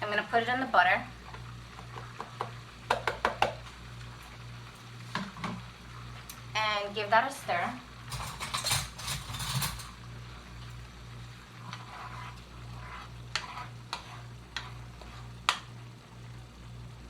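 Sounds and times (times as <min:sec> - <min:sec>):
faint sizzle: 0:00.0 - 0:17.0
spoon scraping a pan: 0:08.1 - 0:10.0, 0:11.5 - 0:15.7.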